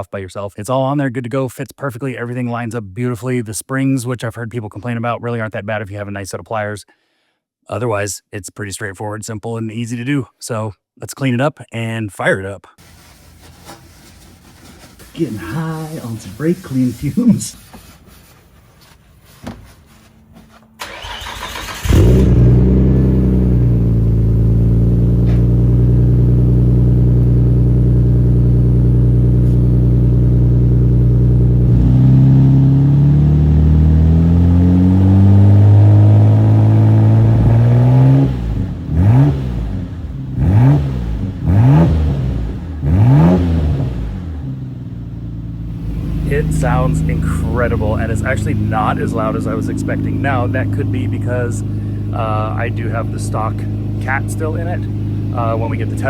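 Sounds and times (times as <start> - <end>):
car engine starting: 19.6 - 56.0
car engine idling: 20.0 - 37.4, 38.5 - 56.0
car engine revving: 20.2 - 56.0.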